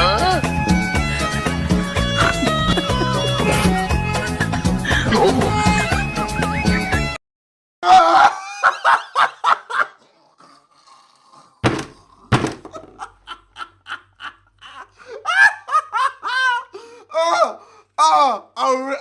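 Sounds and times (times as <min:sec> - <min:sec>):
person laughing hard: 0:02.0 - 0:03.9, 0:04.8 - 0:07.1, 0:07.8 - 0:10.0, 0:12.7 - 0:16.8
sharp knocks: 0:11.6 - 0:12.8.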